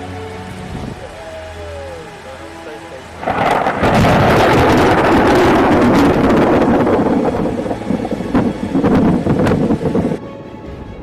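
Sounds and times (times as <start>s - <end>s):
wind buffeting microphone: 3.2s - 10.2s.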